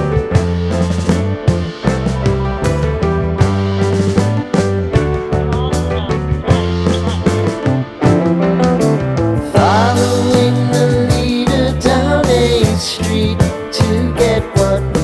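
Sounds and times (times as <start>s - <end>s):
music with beat and bass: 0.0s - 15.0s
person singing: 9.4s - 15.0s.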